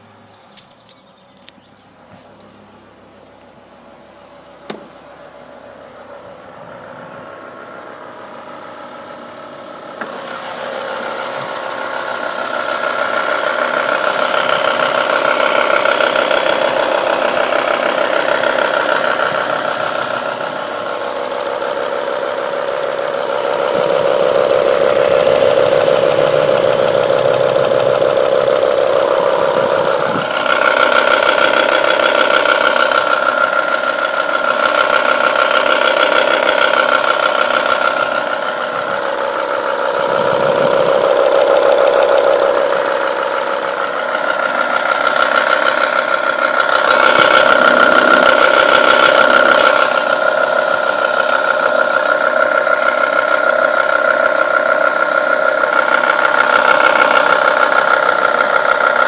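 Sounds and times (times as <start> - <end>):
car engine clattering: 0.1 - 6.1, 8.5 - 59.0.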